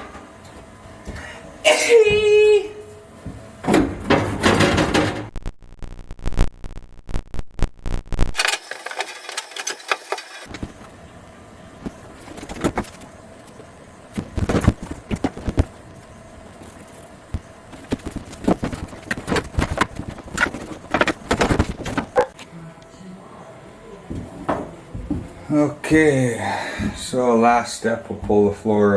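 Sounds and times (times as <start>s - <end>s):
loud thumps: 17.4s - 22.3s
knocks clicks and thuds of hand work: 17.8s - 22.2s.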